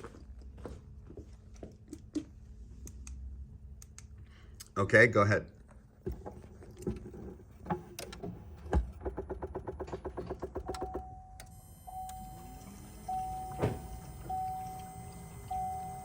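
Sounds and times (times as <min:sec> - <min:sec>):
car warning chime: 0:10.7 - 0:16.0.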